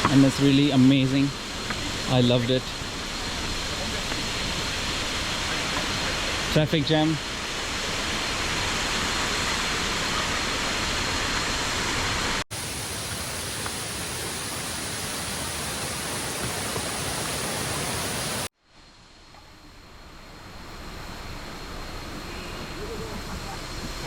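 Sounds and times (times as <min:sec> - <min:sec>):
waterfall roar: 0:00.0 - 0:18.5.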